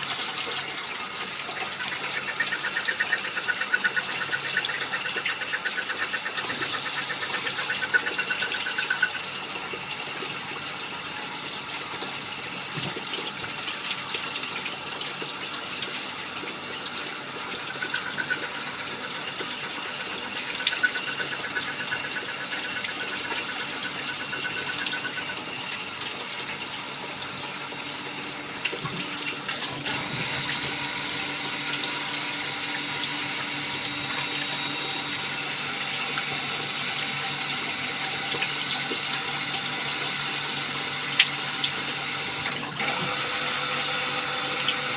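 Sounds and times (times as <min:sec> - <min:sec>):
lathe running: 0:01.7 - 0:09.1, 0:17.6 - 0:25.5.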